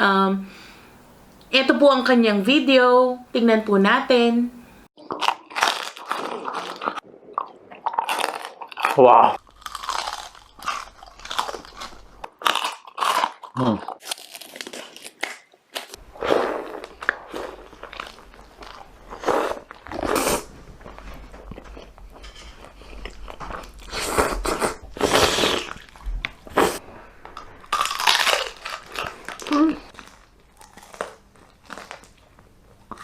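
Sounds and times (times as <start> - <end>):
crunchy bites and chewing: 5.0 - 33.0.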